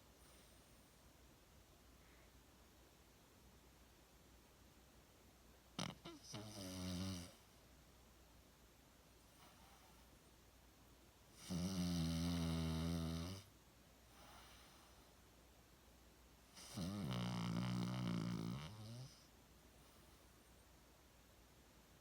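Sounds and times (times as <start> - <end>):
dog snoring: 5.8 - 7.4, 11.4 - 13.5, 16.5 - 19.3
dog soft breath: 9.3 - 10.1, 14.0 - 15.2.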